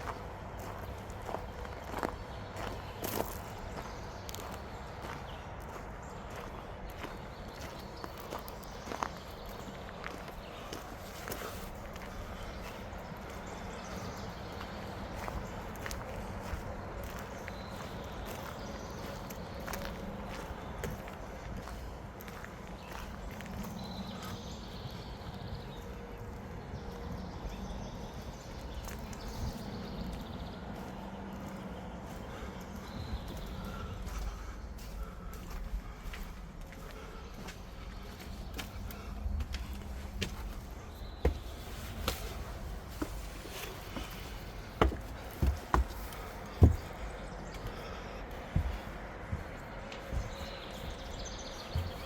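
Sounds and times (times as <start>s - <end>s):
person breathing heavily: 32.1s - 40.0s, 43.9s - 50.4s.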